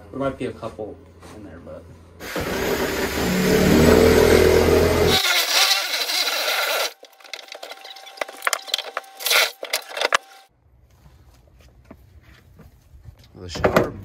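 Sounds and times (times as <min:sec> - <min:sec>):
power tool running loudly: 0:02.2 - 0:07.4.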